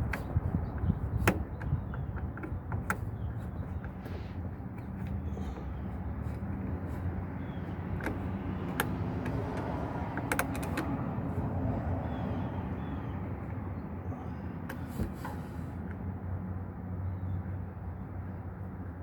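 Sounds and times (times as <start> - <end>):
tools clicking and knocking: 0.0 - 11.0.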